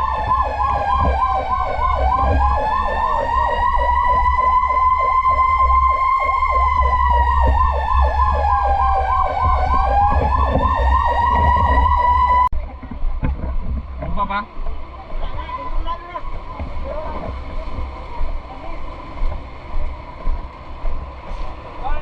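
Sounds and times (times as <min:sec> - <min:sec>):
siren fast yelp: 0:00.0 - 0:12.5
siren slow wail: 0:00.0 - 0:12.5
low rumble: 0:00.0 - 0:22.0.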